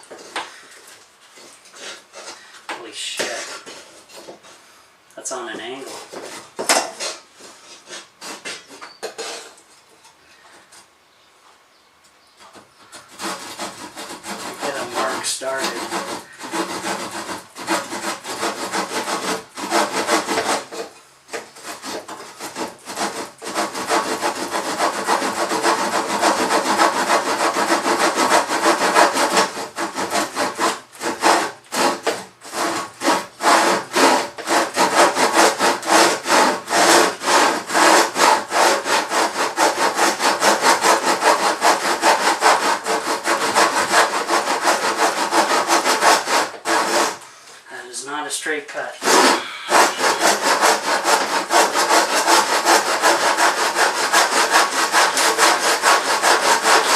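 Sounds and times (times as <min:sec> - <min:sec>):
hand saw cutting wood: 0:00.0 - 0:04.6, 0:05.2 - 0:09.6, 0:12.5 - 0:56.9.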